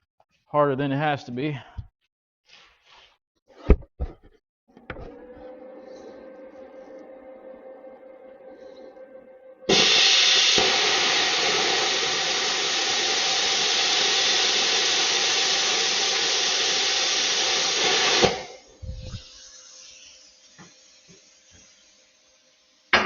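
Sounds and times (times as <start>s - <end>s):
plasma cutter hissing: 9.7s - 22.2s.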